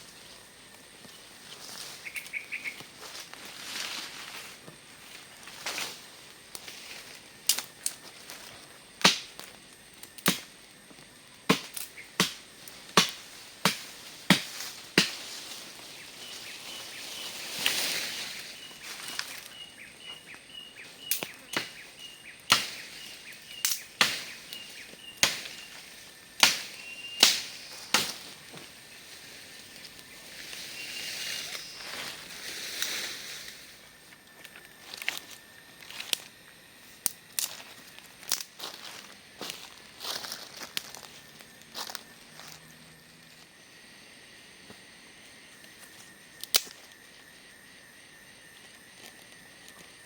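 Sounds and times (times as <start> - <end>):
faint high chirp: 1.8 - 2.8, 26.6 - 27.9, 30.6 - 32.2
blade chopping wood: 9.0 - 9.4, 10.2 - 10.5, 11.5 - 15.2, 22.5 - 22.8.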